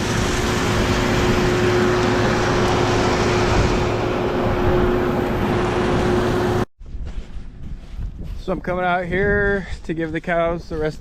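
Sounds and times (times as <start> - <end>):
machinery engine humming: 0.0 - 6.7
rushing noise: 0.0 - 6.7.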